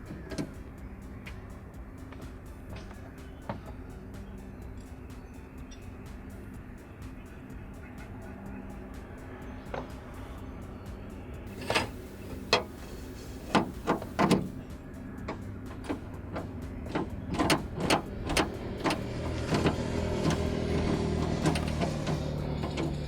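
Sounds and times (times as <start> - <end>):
steady low hum: 0.0 - 23.0
hand tools clicking on metal: 11.5 - 14.6, 15.8 - 23.0.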